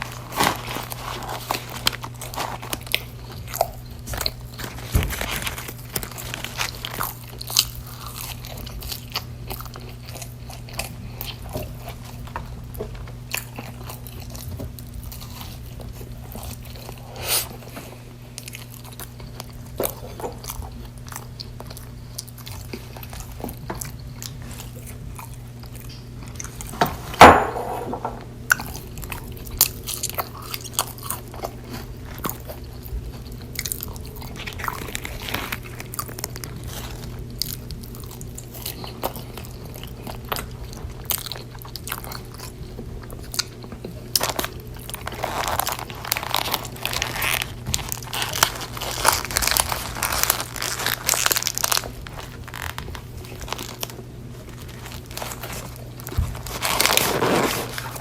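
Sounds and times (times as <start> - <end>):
wet chewing with crunchy bites: 0.0 - 27.5, 28.2 - 58.0
loud crunch or knock: 26.8 - 28.2.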